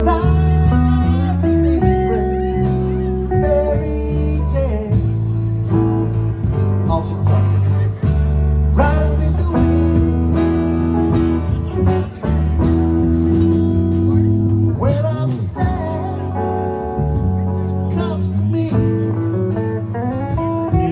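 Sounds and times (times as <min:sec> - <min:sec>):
person singing: 0:00.0 - 0:05.4, 0:08.8 - 0:10.8, 0:14.8 - 0:16.9
bass notes: 0:00.0 - 0:20.9
guitar playing: 0:00.0 - 0:20.9
live band music: 0:00.0 - 0:20.9.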